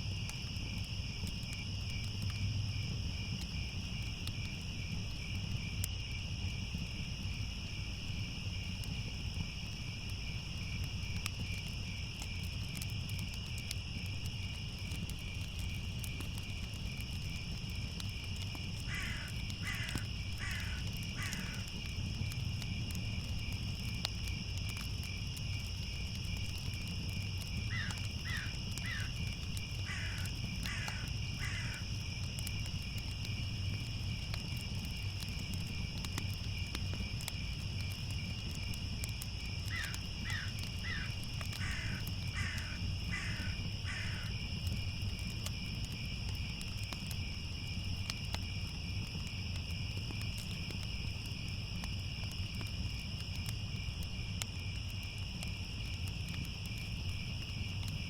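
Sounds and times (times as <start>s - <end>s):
crickets chirping: 0.0s - 58.0s
crow cawing: 18.9s - 21.7s, 27.7s - 29.1s, 29.9s - 31.8s, 39.7s - 44.3s.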